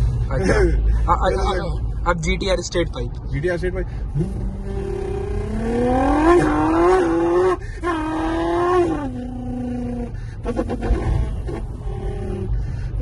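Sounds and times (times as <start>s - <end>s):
man imitating engine revs: 4.1s - 13.0s.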